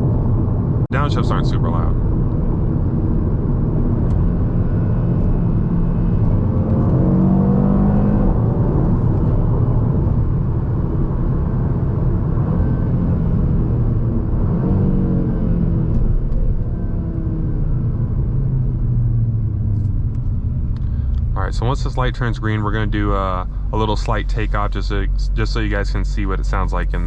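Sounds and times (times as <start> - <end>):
car engine heard from inside: 0.0 - 27.0.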